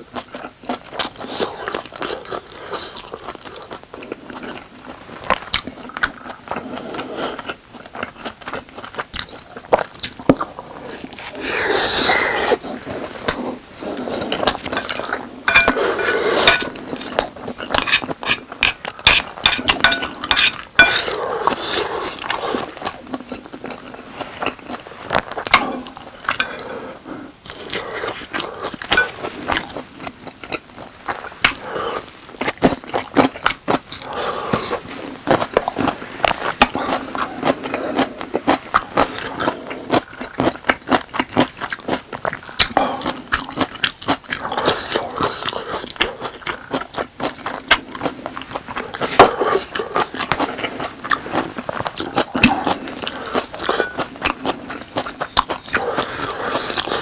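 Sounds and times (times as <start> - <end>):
scraping: 14.7 - 17.1
wet chewing clicks and smacks: 36.6 - 57.0.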